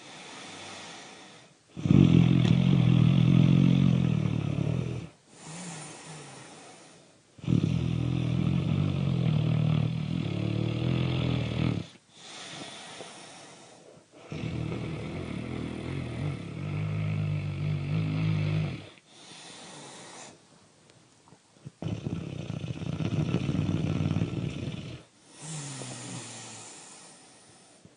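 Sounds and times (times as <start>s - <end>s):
breathy breaths: 0.0s - 1.6s, 5.3s - 7.2s, 11.8s - 17.0s, 18.7s - 20.5s, 25.0s - 27.9s
loud low snoring: 0.0s - 20.4s, 21.7s - 27.4s.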